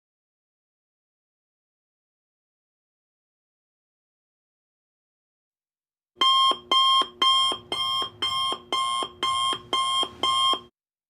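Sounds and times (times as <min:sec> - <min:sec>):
alarm clock beeping: 0:06.2 - 0:10.7.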